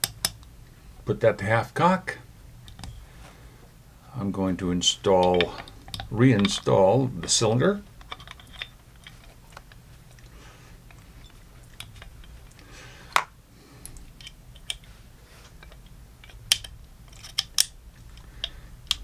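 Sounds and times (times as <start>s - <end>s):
revolver metal clicks: 0.0s - 0.6s, 2.6s - 3.1s, 5.0s - 19.0s.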